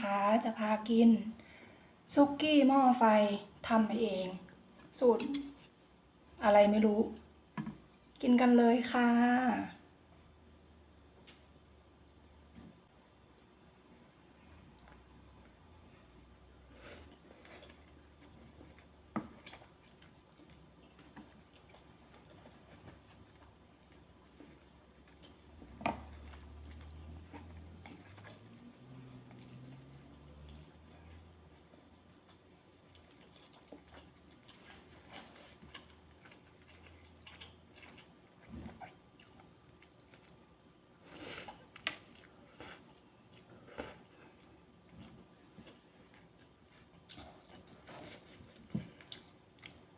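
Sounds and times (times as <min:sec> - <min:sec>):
faint low hum: 0:00.0 - 0:49.9
soft chewing: 0:03.4 - 0:49.9.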